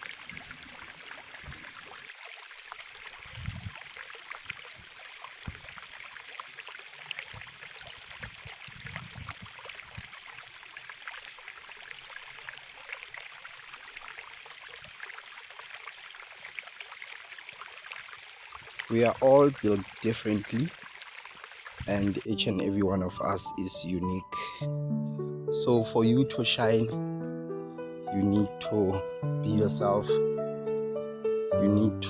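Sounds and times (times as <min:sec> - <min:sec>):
running water hiss: 0:00.0 - 0:24.3.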